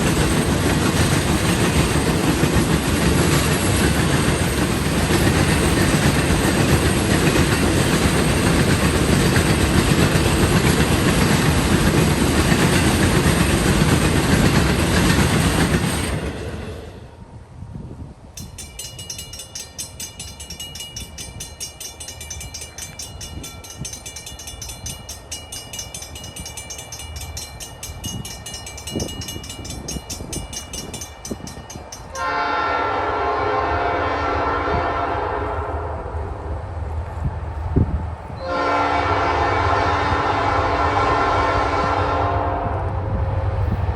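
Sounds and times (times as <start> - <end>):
freight train rumbling on rails: 0.0 - 43.9
rapid high-pitched ringing: 18.4 - 32.3
locomotive air horn chord: 32.1 - 36.2, 38.4 - 42.9.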